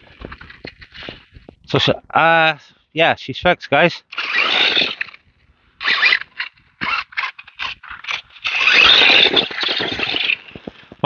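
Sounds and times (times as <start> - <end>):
scraping crunching: 0.0 - 1.6, 4.1 - 11.0.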